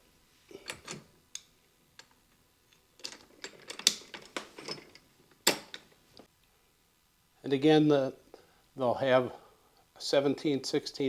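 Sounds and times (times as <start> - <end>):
shower chair frame clicks and rattles: 0.6 - 1.1, 3.0 - 5.9.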